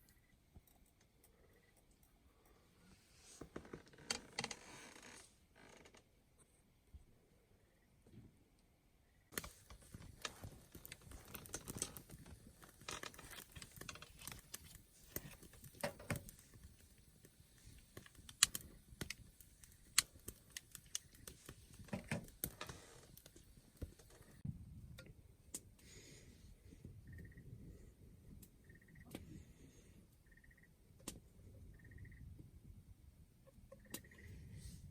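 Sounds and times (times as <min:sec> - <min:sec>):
objects being handled clicking: 0:17.7 - 0:24.4.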